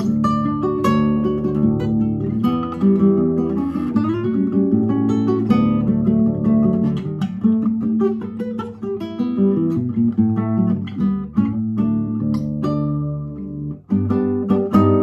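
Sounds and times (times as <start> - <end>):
fingerpicked acoustic guitar: 0.0 - 15.0.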